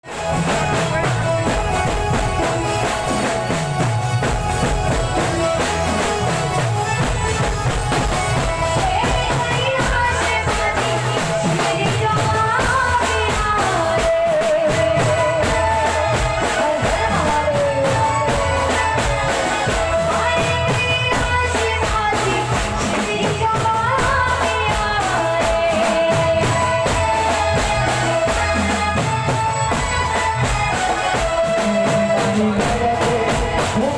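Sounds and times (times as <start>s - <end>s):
fast percussion rhythm: 0.0s - 33.9s.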